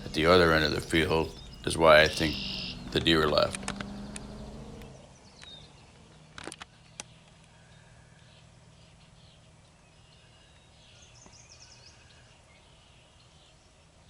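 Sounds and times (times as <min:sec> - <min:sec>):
high bird trill: 0:00.0 - 0:06.3
faint birdsong chirps: 0:00.0 - 0:14.0
sharp clicks: 0:02.3 - 0:05.6, 0:06.3 - 0:07.6.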